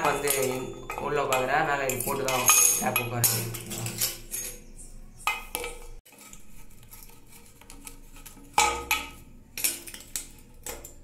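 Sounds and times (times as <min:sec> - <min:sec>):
metal tap fittings clinking: 0:00.0 - 0:04.7.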